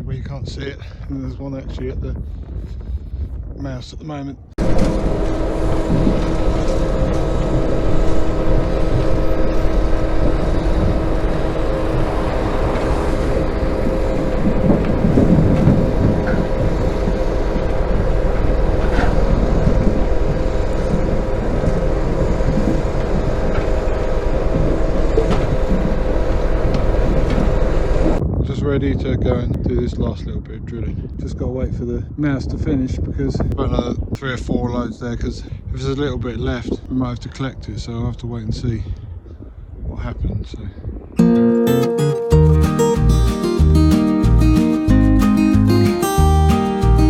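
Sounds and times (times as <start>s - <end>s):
tractor engine running: 4.6s - 28.2s, 42.4s - 47.0s.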